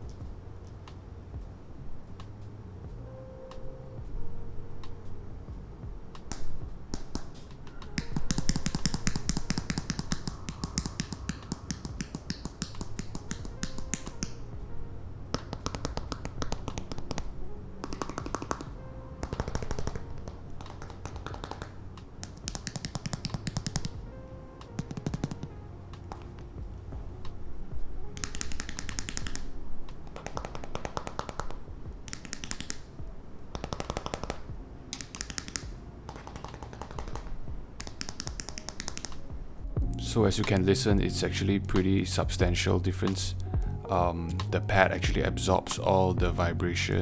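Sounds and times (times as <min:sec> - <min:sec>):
background music: 0:00.0 - 0:47.0
fingers tapping on plastic: 0:06.1 - 0:14.7, 0:15.3 - 0:27.4, 0:28.2 - 0:41.1.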